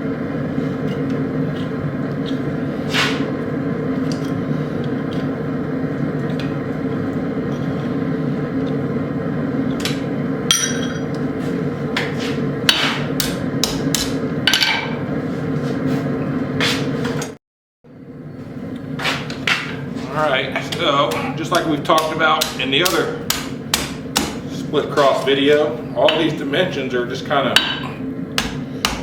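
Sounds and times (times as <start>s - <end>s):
steady hum: 0.0s - 29.0s
hammer striking hot steel: 9.8s - 11.2s, 12.0s - 15.0s, 20.7s - 25.1s, 27.6s - 29.0s.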